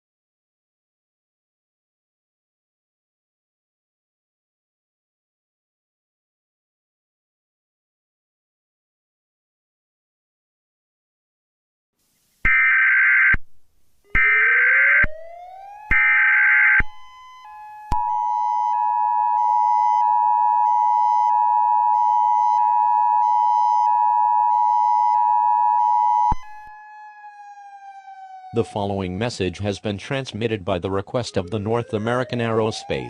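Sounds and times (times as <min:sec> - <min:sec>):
upward gliding tone: 0:31.2 - 0:33.0.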